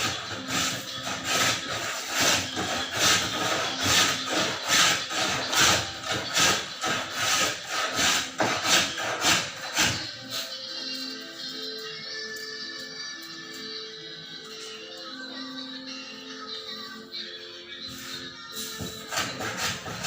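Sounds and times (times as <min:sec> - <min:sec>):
hand saw cutting wood: 0:00.0 - 0:10.1, 0:19.0 - 0:20.0.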